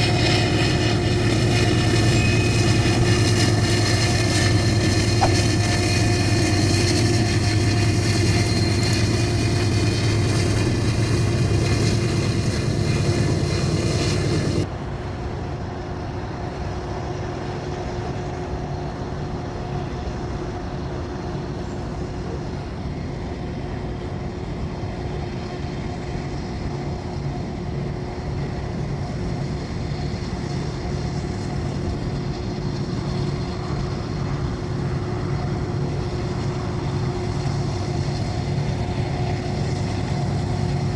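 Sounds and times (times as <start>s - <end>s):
diesel locomotive engine drone: 0.0s - 40.9s.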